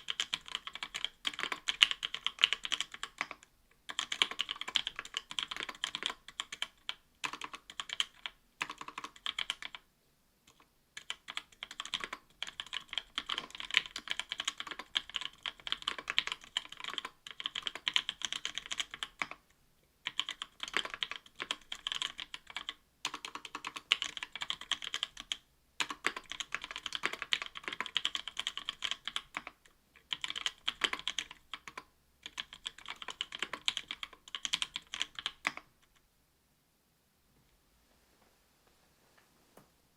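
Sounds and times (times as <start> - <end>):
fast typing on mechanical keyboard: 0.0 - 9.8, 10.5 - 19.4, 20.0 - 35.7.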